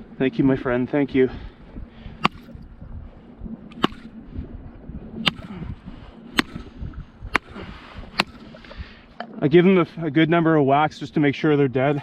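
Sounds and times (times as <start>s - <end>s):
sharp whacks of fish bat: 2.2s - 2.5s, 3.8s - 4.1s, 5.3s - 5.6s, 6.4s - 6.7s.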